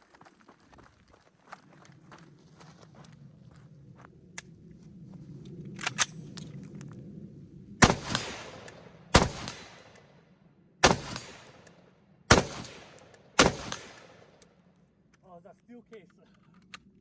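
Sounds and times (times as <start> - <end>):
rifle shots with echo: 7.8 - 10.2, 10.8 - 14.4.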